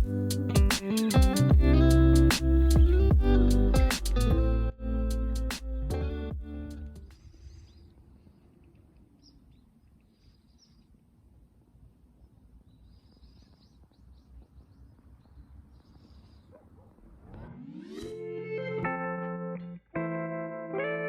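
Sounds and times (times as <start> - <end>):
faint birds chirping: 7.0 - 18.1.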